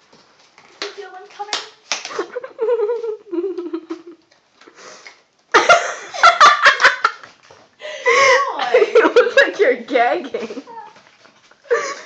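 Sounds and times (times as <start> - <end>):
girl giggling: 2.1 - 4.2, 7.8 - 9.6, 11.6 - 12.0.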